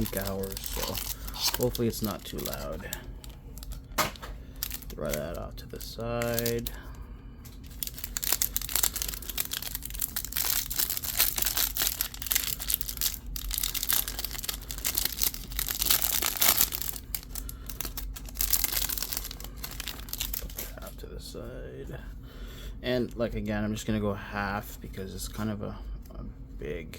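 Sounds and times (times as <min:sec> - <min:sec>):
plastic wrapper crinkling and tearing: 0:00.0 - 0:06.8, 0:07.6 - 0:20.9
clothes dryer humming: 0:00.0 - 0:23.6.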